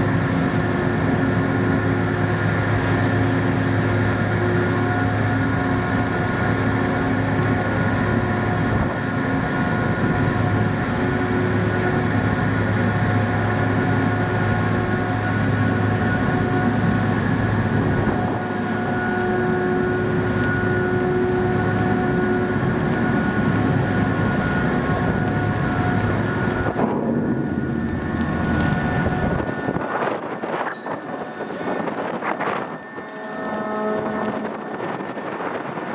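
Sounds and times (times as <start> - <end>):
ship engines droning: 0.0 - 35.9.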